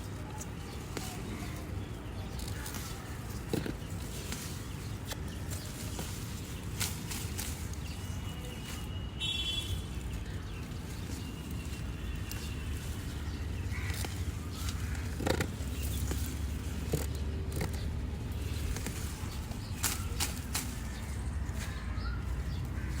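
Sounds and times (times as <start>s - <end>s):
light clicks and rustles: 10.2s - 23.0s.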